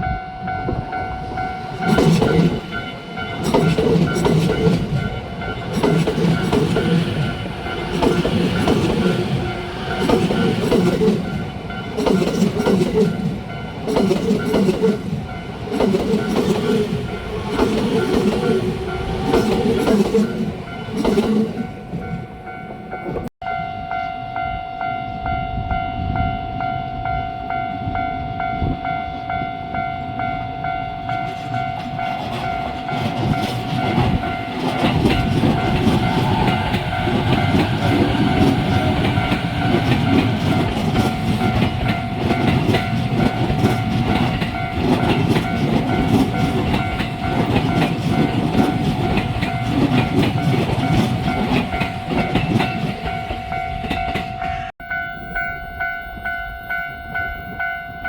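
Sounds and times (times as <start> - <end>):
level crossing alarm bell: 0.0 - 21.0, 21.6 - 58.0
train wheels clattering over rail joints: 1.8 - 21.7, 31.1 - 54.6.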